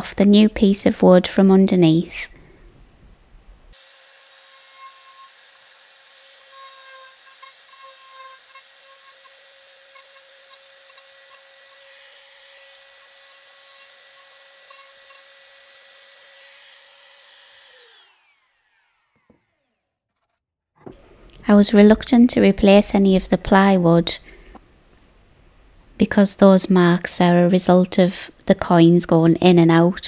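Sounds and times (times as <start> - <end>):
router cutting wood: 3.7 - 20.4.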